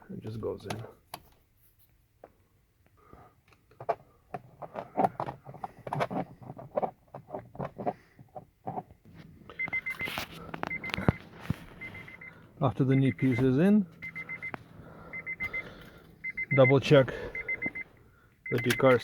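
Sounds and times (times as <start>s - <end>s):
dashboard warning chime beeping: 9.5s - 19.0s.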